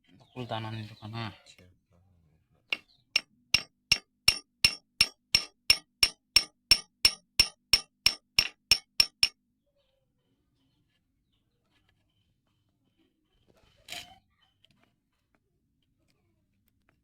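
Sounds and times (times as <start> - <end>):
hammer tapping on metal: 2.7 - 9.4.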